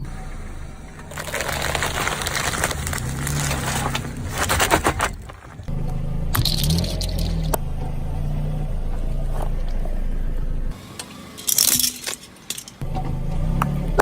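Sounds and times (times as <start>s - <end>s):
motor humming: 0.0s - 14.0s
sharp brittle crackle: 1.0s - 5.5s.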